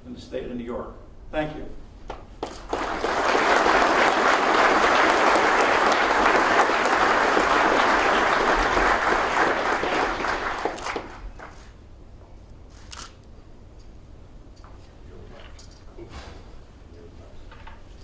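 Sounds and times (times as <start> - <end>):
audience applauding: 2.4 - 11.7.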